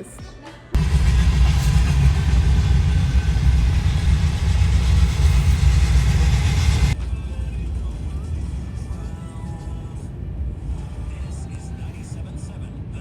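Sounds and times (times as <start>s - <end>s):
rain hissing: 0.8s - 7.0s
car road and engine rumble: 0.8s - 13.0s.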